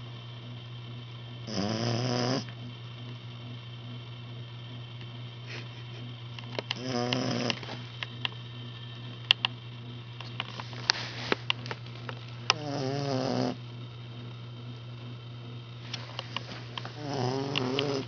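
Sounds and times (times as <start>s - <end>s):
steady low hum: 0.0s - 18.0s
puppy snoring: 1.4s - 2.6s, 6.7s - 7.8s, 12.4s - 13.6s, 15.9s - 18.0s
sharp clicks: 9.2s - 9.6s, 17.5s - 18.0s.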